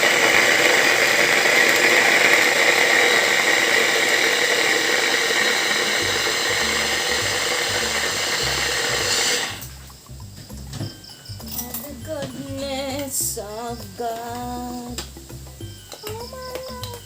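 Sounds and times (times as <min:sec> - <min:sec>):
electric blender running: 0:00.0 - 0:09.8.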